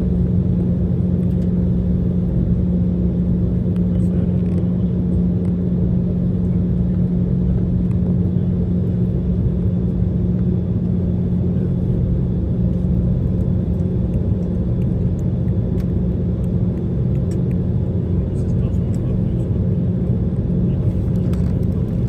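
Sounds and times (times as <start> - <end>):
constant low hum: 0.0 - 22.0
jet engine rumble: 0.0 - 22.0.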